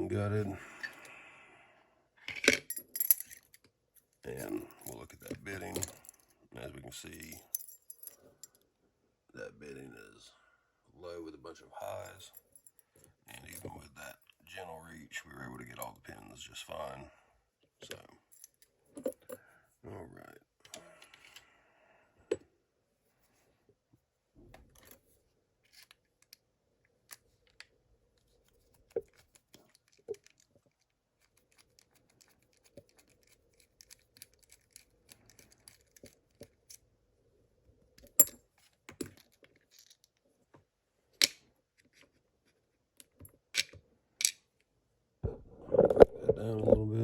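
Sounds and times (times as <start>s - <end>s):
padlock metallic clicks and scrapes: 25.6s - 36.9s.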